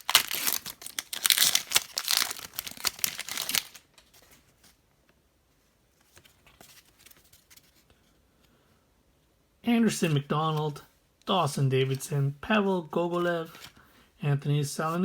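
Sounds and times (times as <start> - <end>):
wrapper tearing and crinkling: 0.0 - 4.3.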